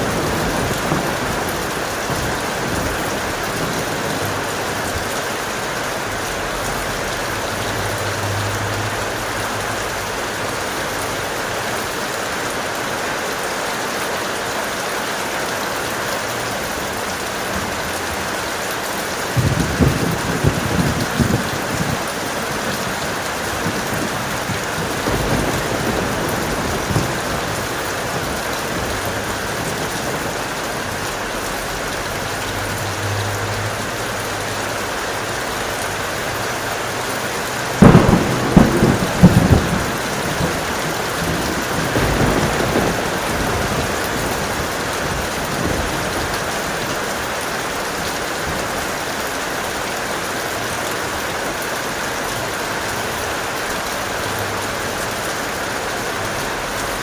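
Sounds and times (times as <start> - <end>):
thunderclap rumbling: 0.0 - 5.1, 19.2 - 30.9, 37.6 - 47.0
heavy rain: 0.0 - 57.0.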